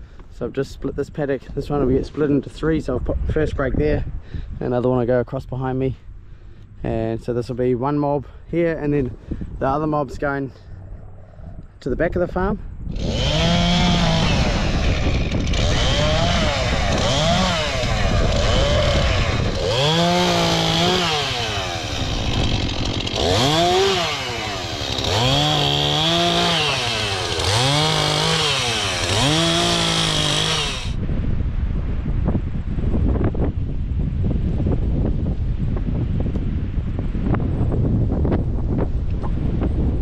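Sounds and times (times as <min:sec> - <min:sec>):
chainsaw engine revving: 0:12.9 - 0:31.0.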